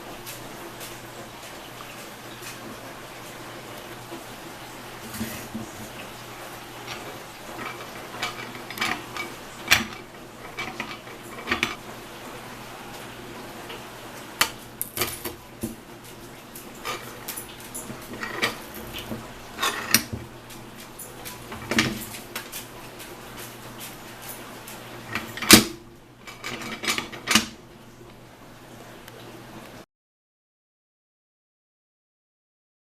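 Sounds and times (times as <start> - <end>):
cast iron parts clinking: 6.8 - 11.8, 16.8 - 20.2.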